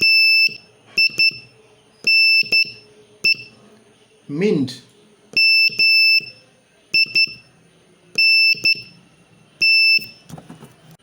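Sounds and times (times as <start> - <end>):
morse code beeps: 0.0 - 3.5, 5.4 - 7.5, 8.2 - 9.0, 9.6 - 10.2.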